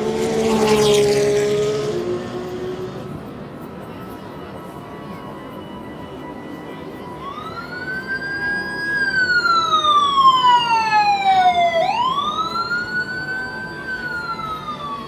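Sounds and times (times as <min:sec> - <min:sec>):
emergency vehicle siren wailing: 0:04.6 - 0:15.0.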